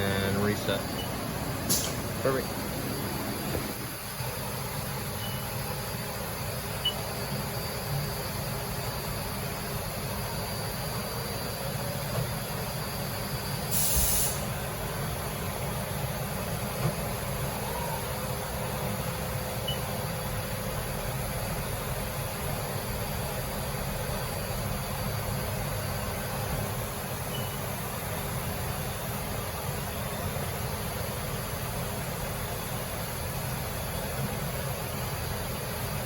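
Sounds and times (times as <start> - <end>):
shop machinery humming: 0.0 - 36.0
compressed air hiss: 1.7 - 2.1, 13.7 - 14.6.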